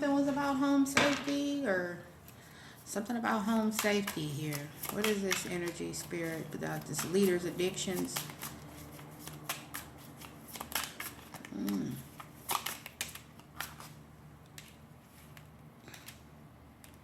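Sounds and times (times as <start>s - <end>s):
cards being handled: 3.4s - 17.0s
cards snapping and flicking: 3.8s - 5.8s, 6.8s - 16.2s.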